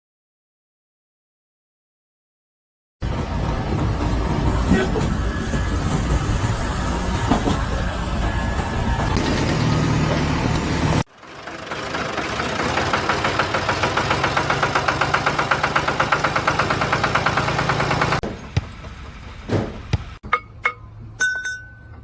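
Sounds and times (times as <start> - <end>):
engine-driven machine pulsing: 3.0 - 20.2.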